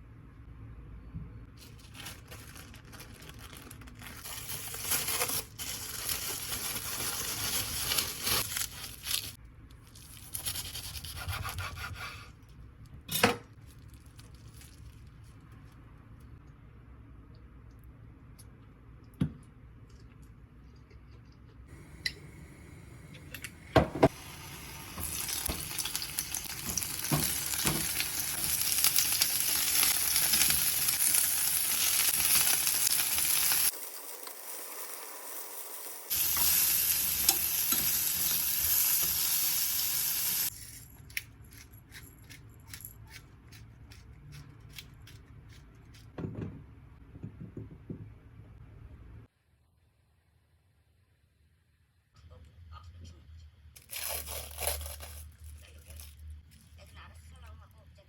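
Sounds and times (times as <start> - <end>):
food sizzling in a pan: 24.1 - 40.5.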